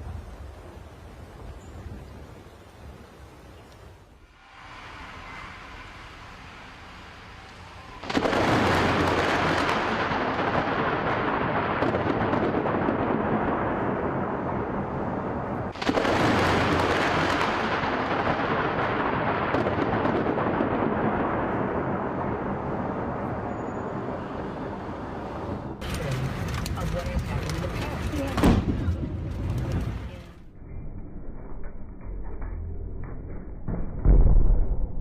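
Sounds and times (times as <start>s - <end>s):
thunderclaps: 4.5s - 30.5s.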